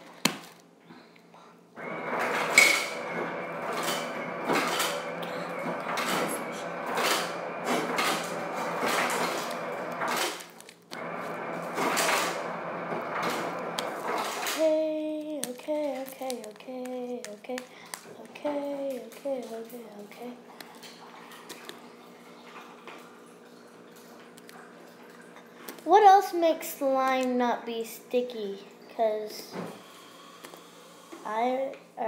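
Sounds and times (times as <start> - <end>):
sticky slime squishing: 12.8 - 21.9.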